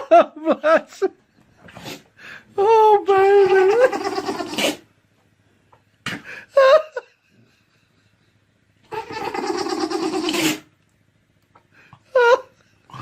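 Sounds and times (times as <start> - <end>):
pet vocal call: 3.2 - 4.9, 8.9 - 10.7.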